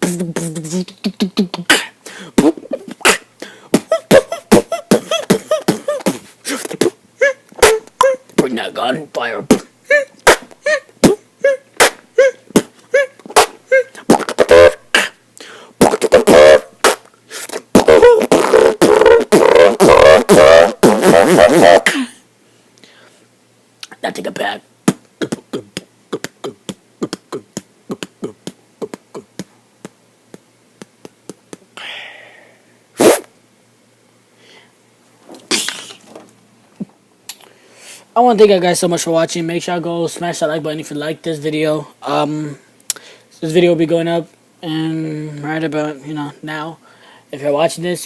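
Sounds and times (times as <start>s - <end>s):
beatboxing vocal percussion: 0.0s - 15.2s, 15.8s - 22.0s, 23.8s - 31.9s, 33.0s - 33.3s, 35.5s - 36.0s
buzzing vocal bass sound: 0.0s - 15.2s, 15.8s - 22.1s, 24.8s - 31.8s.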